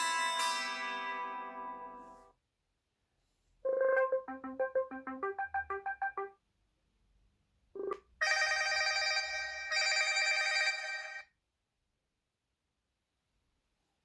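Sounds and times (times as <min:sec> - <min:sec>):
ringtone of bright chiming chords: 0:00.0 - 0:02.2, 0:03.7 - 0:06.3
ringtone melody of short notes: 0:03.7 - 0:06.3.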